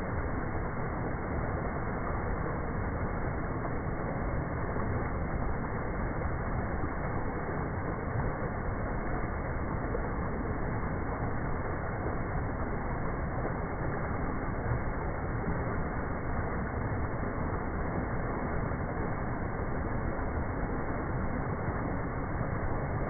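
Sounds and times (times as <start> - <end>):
creek water rushing: 0.0 - 23.0.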